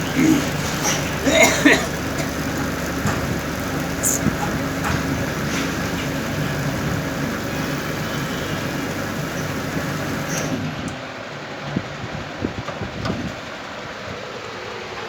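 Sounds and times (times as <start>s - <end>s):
electric motor humming: 0.0s - 10.6s.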